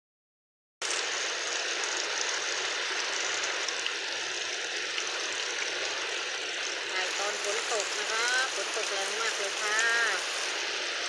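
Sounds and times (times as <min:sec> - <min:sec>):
heavy rain falling: 0:06.9 - 0:10.6.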